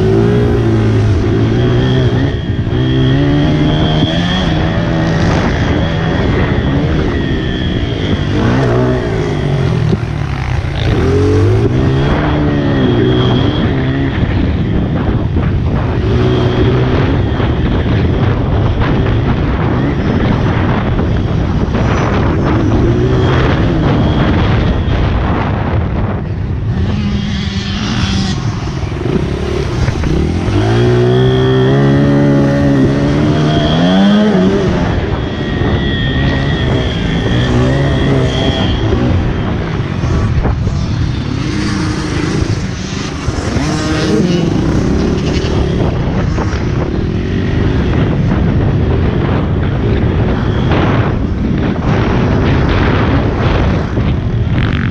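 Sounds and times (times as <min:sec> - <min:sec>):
small motorbike engine revving: 0:00.0 - 0:14.4, 0:26.7 - 0:39.5, 0:41.3 - 0:46.2.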